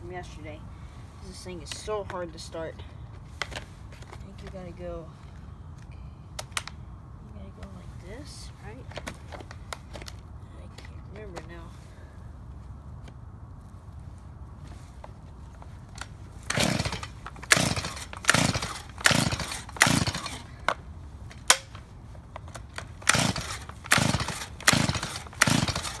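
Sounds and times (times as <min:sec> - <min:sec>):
chainsaw recoil starter cranking: 0:16.0 - 0:26.0.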